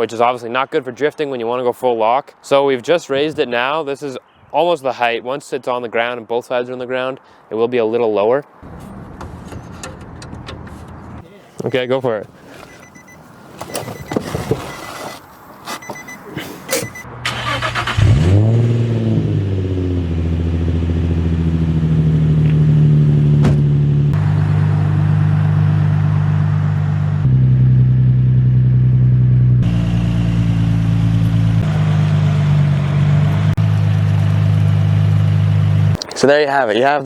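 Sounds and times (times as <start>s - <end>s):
car engine starting and idling: 12.5s - 36.0s.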